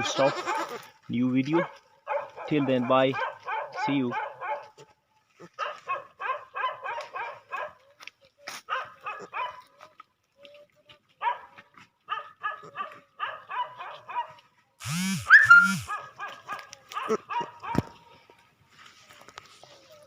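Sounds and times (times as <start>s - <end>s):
high-pitched animal calls: 14.8s - 16.0s.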